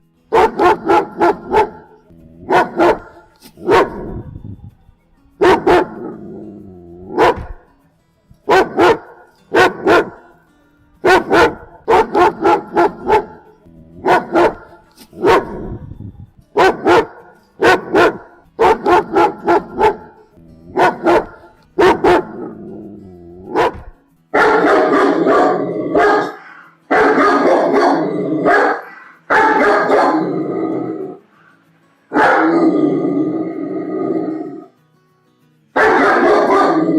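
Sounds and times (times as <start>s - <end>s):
dog barking angrily: 0.3s - 4.3s, 5.4s - 7.7s, 8.5s - 10.3s, 11.0s - 15.8s, 16.6s - 22.8s, 23.4s - 31.2s, 32.1s - 34.7s, 35.8s - 36.9s
dog growling: 0.4s - 4.3s, 5.5s - 7.6s, 17.8s - 23.9s, 27.4s - 29.0s, 29.7s - 31.2s, 32.3s - 34.7s.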